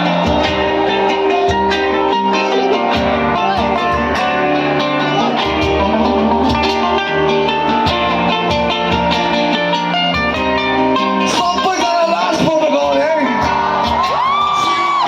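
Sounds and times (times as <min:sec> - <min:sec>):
bass line: 0:00.0 - 0:11.7
drums playing a beat: 0:00.0 - 0:15.0
electric guitar: 0:00.0 - 0:15.0.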